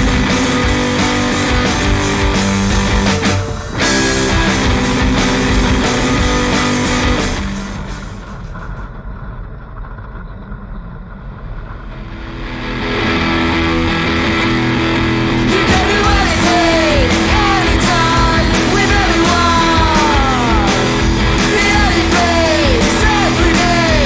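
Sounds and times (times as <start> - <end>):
rock band with electric guitar: 0.0 - 8.8, 12.0 - 24.0
person singing: 15.4 - 24.0.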